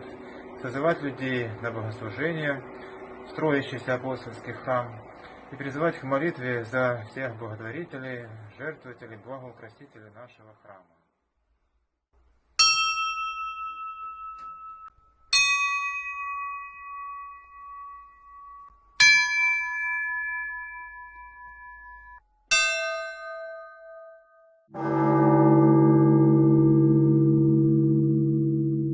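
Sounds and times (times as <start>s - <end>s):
church bells struck: 24.7s - 28.9s
deep large bell ringing: 24.7s - 28.9s.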